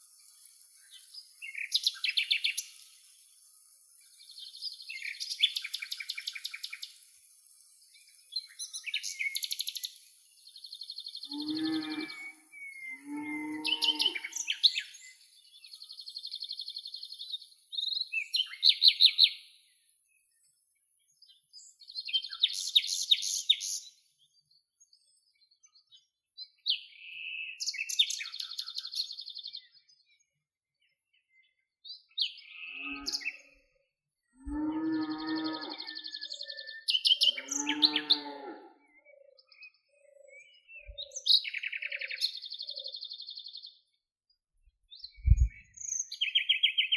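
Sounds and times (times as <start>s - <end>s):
birds trilling and chirping: 11.0s - 15.0s, 32.7s - 33.5s, 34.5s - 42.9s
soft low repeating note: 45.2s - 45.6s.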